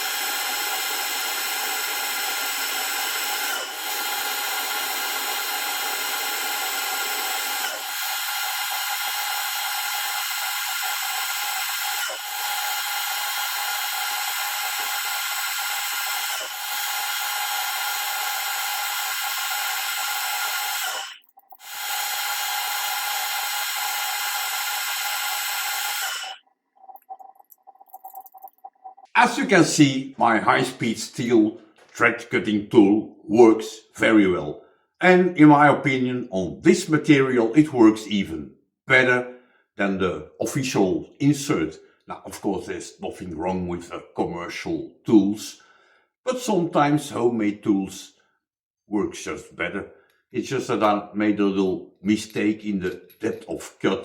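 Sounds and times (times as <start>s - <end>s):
metal lathe cutting whine: 0.0s - 26.4s.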